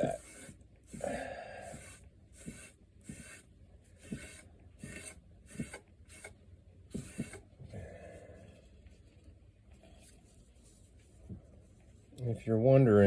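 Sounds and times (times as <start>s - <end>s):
brush rubbing finish on wood: 0.0s - 6.3s, 6.9s - 7.4s.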